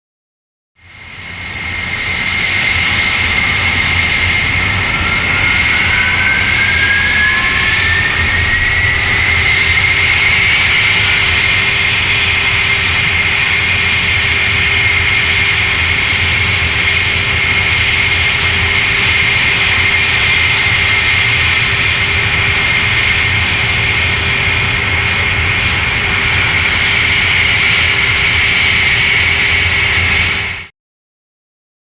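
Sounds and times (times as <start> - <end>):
jet engine turbine whine: 0.8 - 30.7
rising spool-up whine: 4.0 - 10.7, 22.5 - 24.8.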